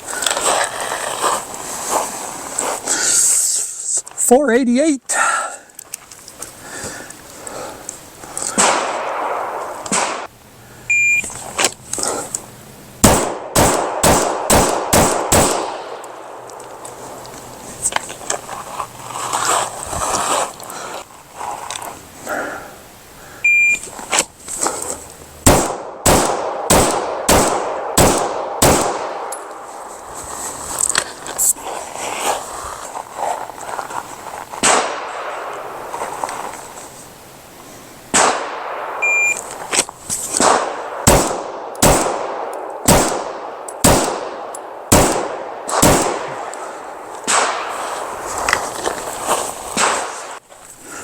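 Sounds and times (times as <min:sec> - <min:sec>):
rapid pistol shots with echo: 0:08.6 - 0:10.3, 0:13.0 - 0:16.1, 0:25.4 - 0:29.3, 0:38.1 - 0:39.0, 0:40.4 - 0:46.4
shot timer beep: 0:10.9 - 0:11.3, 0:23.5 - 0:23.8, 0:39.0 - 0:39.4.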